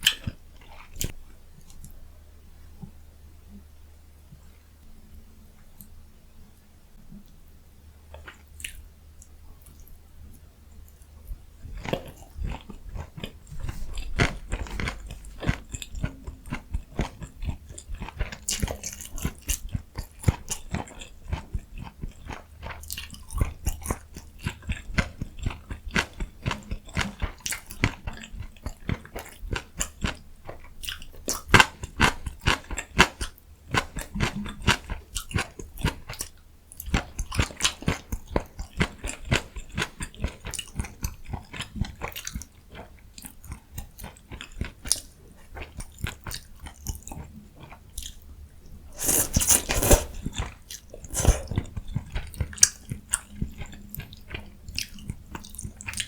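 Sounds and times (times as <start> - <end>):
crunchy bites and chewing: 48.9 - 51.9.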